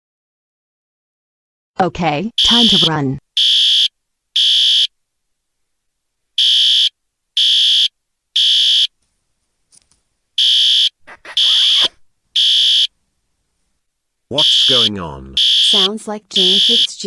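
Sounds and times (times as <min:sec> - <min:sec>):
fire alarm beeping: 0:02.4 - 0:04.9, 0:06.4 - 0:08.9, 0:10.4 - 0:12.9, 0:14.3 - 0:17.0.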